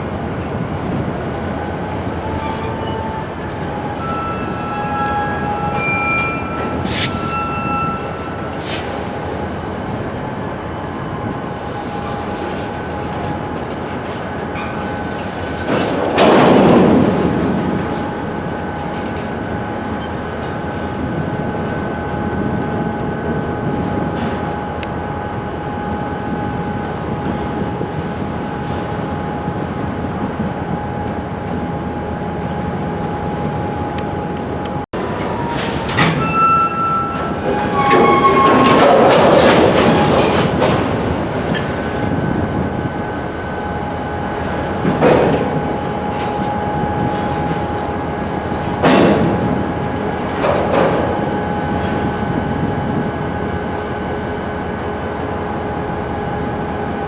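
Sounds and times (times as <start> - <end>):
freight cars rumbling: 0.0 - 55.2
wheel squeal: 4.0 - 8.9, 35.2 - 39.3.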